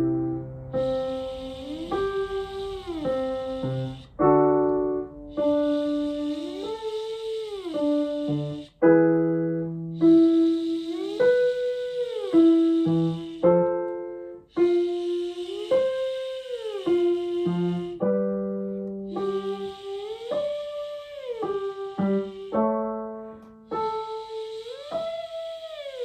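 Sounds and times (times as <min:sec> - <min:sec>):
piano chords: 0:00.0 - 0:26.0
person singing buzzy sliding tone: 0:00.7 - 0:26.0.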